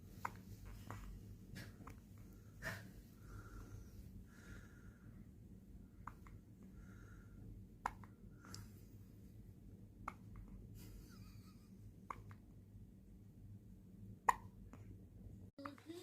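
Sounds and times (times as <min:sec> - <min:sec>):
baby breathing softly: 0:00.7 - 0:05.3.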